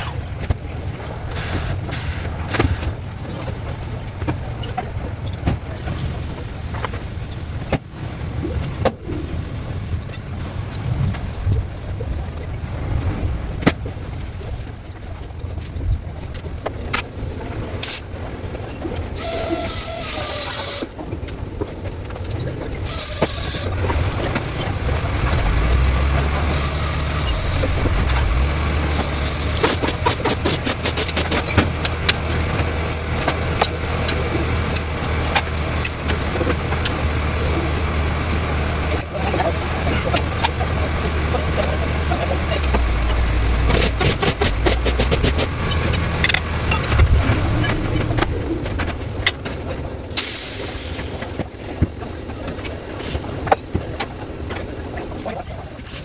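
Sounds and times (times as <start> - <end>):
car engine running: 21.0 - 56.0.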